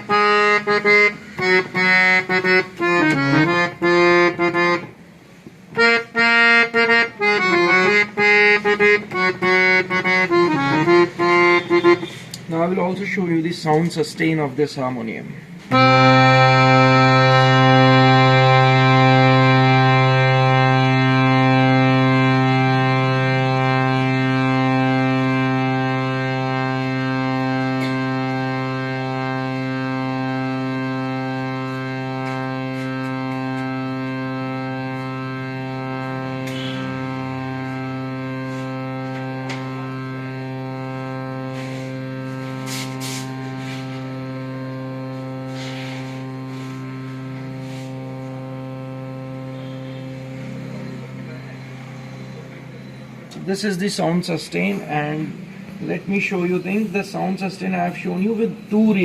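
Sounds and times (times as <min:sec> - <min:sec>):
reed harmonium holding low note: 0:00.0 - 0:13.5, 0:15.7 - 0:59.0
air hisses: 0:42.6 - 0:44.0.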